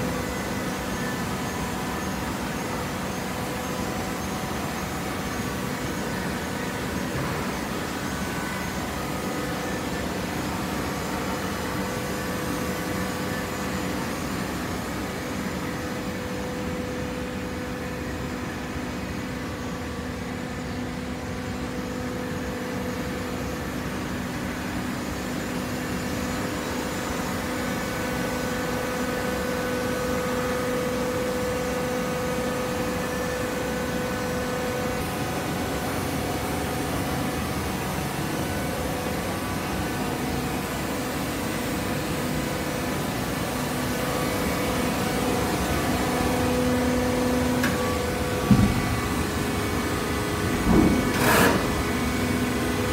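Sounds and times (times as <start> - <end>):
baler machine humming: 22.6 - 52.9.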